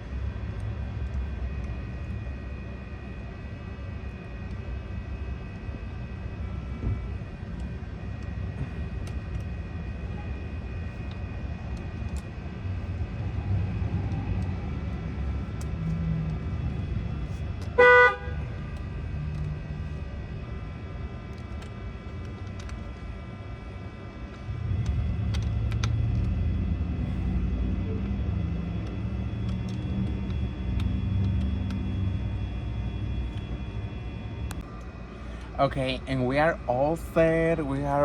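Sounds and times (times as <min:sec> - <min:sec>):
low rumble: 0:00.0 - 0:37.9
car horn toot: 0:17.7 - 0:18.6.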